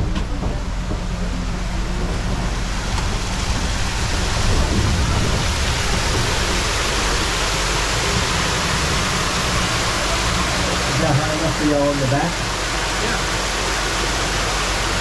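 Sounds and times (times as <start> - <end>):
low hum: 0.0 - 11.7
waterfall rushing: 0.6 - 15.0.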